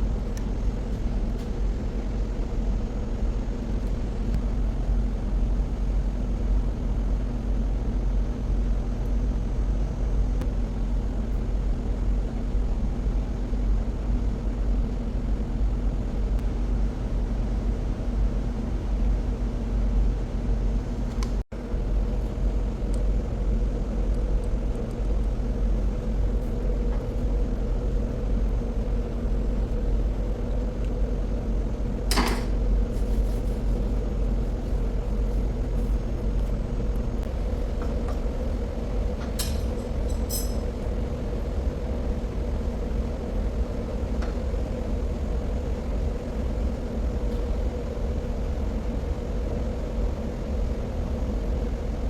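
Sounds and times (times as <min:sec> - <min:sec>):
electrical hum: 0:00.0 - 0:52.0
deep rumble: 0:20.8 - 0:47.3.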